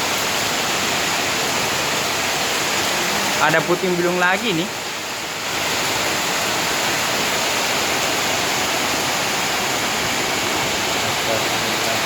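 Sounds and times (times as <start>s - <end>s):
heavy rain: 0.0s - 12.0s
strong wind: 4.7s - 12.0s.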